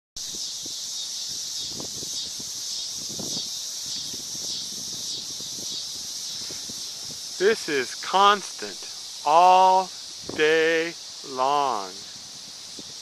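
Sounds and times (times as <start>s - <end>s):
cicadas buzzing: 0.2s - 13.0s.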